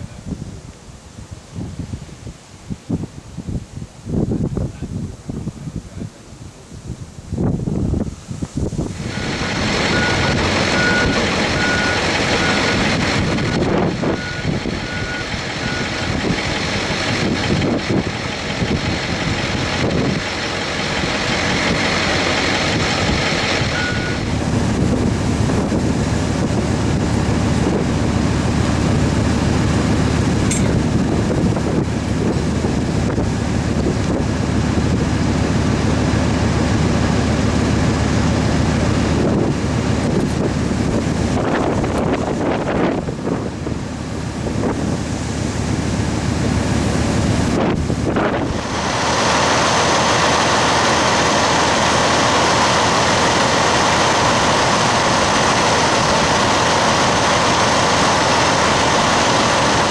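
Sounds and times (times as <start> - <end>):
rushing wind noise: 0.0 - 59.9
vehicle reversing alarm beeping: 9.0 - 31.4.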